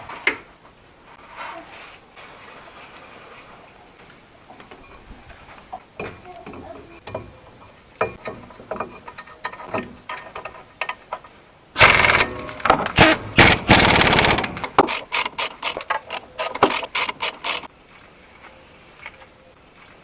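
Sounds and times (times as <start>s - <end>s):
metallic clicks and knocks: 6.0s - 17.7s
ratchet wrench rattling: 8.1s - 17.7s.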